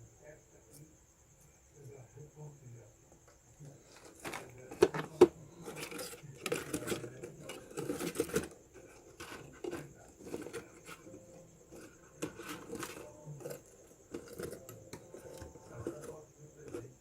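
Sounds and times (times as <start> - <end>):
cardboard rustling and scraping: 3.8 - 17.0.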